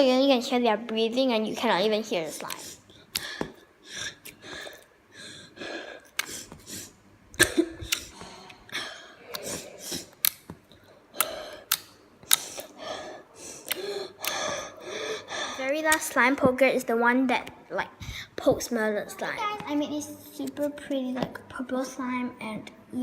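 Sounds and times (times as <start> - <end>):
person breathing heavily: 2.5 - 7.0, 7.8 - 10.3, 11.0 - 15.7.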